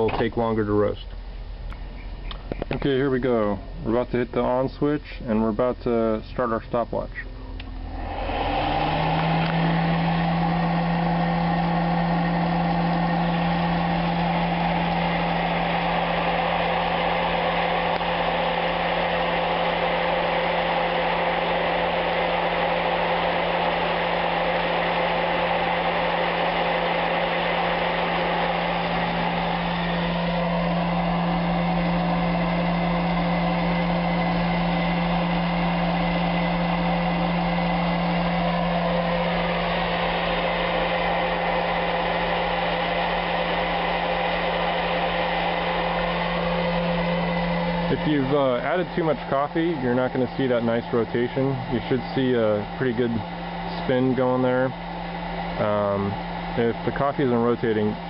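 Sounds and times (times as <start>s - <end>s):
popcorn popper fan whirring: 0.0s - 58.0s
rush of hot air: 8.0s - 49.1s.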